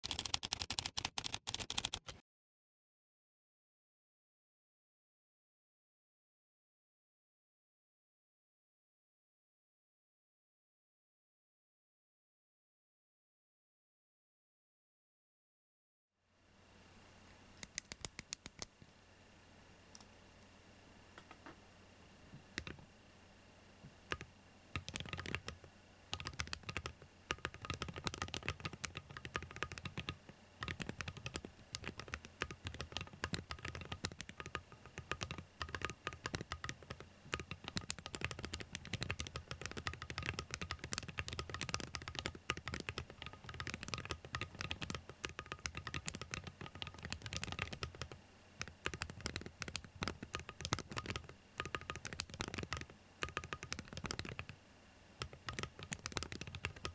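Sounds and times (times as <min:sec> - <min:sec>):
typing on mechanical keyboard: 0:00.0 - 0:02.2, 0:17.6 - 0:18.7, 0:22.6 - 0:22.8, 0:24.1 - 0:54.6, 0:55.2 - 0:56.9.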